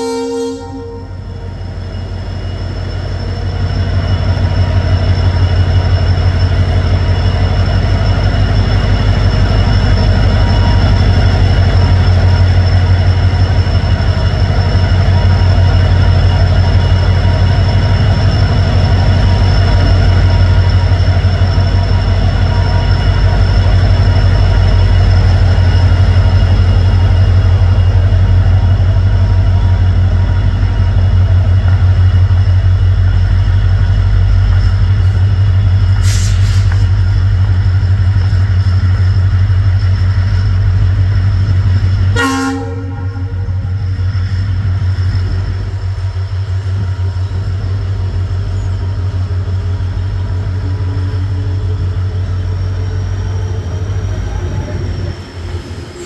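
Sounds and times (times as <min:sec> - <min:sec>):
locomotive rumble: 0:00.0 - 0:56.0.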